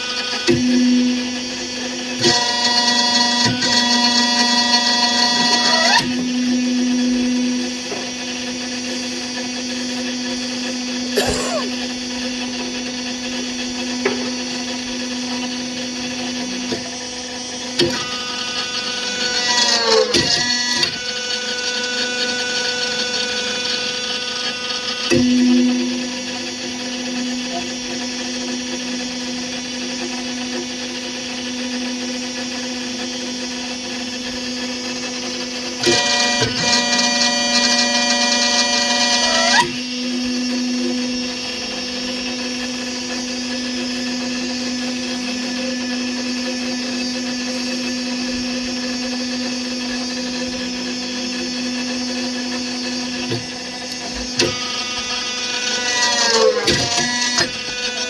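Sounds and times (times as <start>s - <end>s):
electric motor hum and whine: 0.0s - 58.0s.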